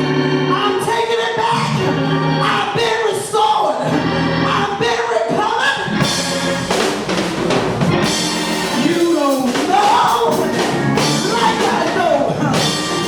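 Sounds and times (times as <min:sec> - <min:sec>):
drum kit playing: 0:05.9 - 0:13.0
person singing: 0:08.1 - 0:13.0.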